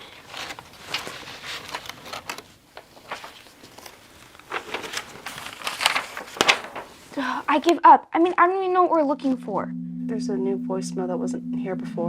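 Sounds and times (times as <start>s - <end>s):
papers rustling: 0.0s - 7.2s.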